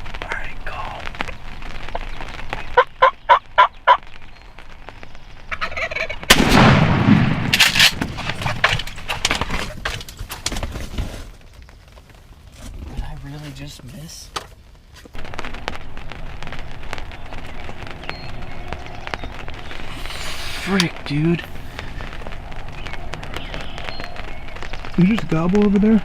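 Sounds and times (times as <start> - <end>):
turkey yelps: 5.5 - 6.2
loud shotgun shot: 6.3 - 8.1.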